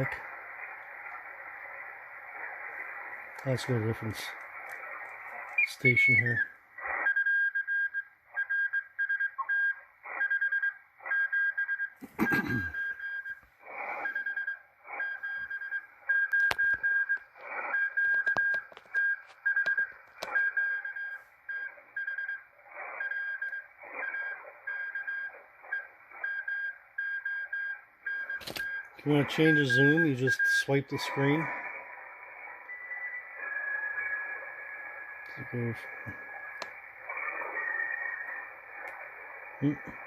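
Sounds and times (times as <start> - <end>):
radio band hiss: 0.0 - 7.0, 13.6 - 14.2, 17.1 - 20.4, 22.6 - 23.1, 23.7 - 24.7, 28.4 - 40.0
morse code beeps: 7.1 - 13.4, 14.1 - 31.2.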